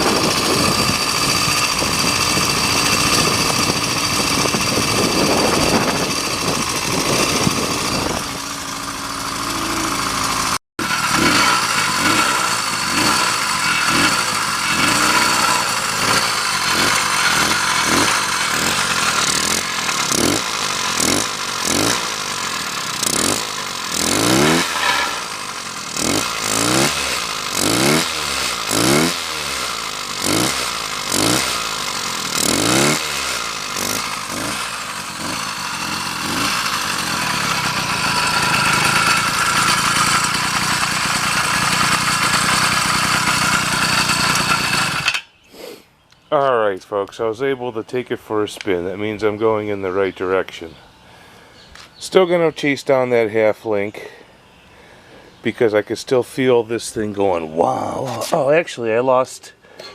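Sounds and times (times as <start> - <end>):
two-stroke engine revving: 0.0 - 45.7.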